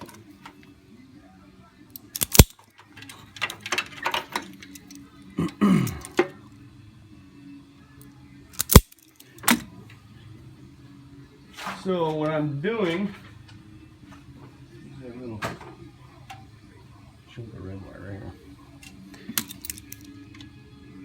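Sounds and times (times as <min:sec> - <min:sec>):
sharp clicks: 0:02.0 - 0:02.6, 0:08.6 - 0:09.0
small parts clattering: 0:02.0 - 0:05.0, 0:05.9 - 0:06.4, 0:08.6 - 0:09.7, 0:18.8 - 0:20.5.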